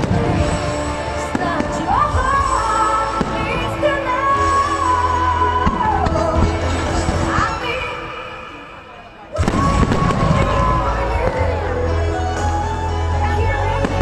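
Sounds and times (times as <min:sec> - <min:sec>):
steady bass: 0:00.0 - 0:07.6, 0:09.4 - 0:14.0
fireworks bangs: 0:09.3 - 0:11.5.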